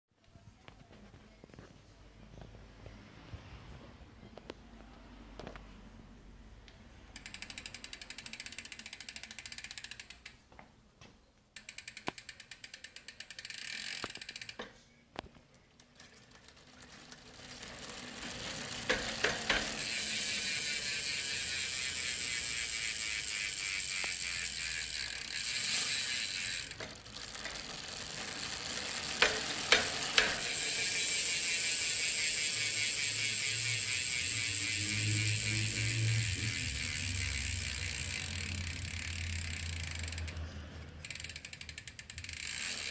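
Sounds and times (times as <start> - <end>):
bicycle hub ratcheting buzz: 7.0 - 10.4, 11.6 - 14.7, 15.8 - 42.9.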